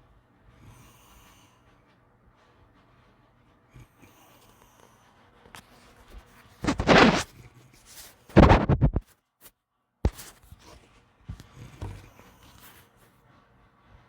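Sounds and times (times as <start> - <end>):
dog snorting breaths: 6.6 - 9.0.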